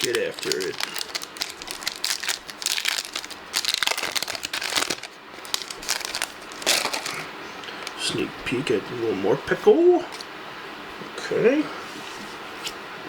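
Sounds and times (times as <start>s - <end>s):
foil wrapper crinkling and tearing: 0.0s - 7.9s.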